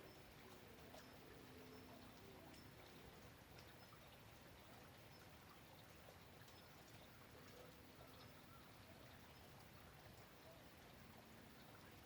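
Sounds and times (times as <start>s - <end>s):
faint rain hiss: 0.0s - 12.0s
raindrops ticking: 0.0s - 12.0s.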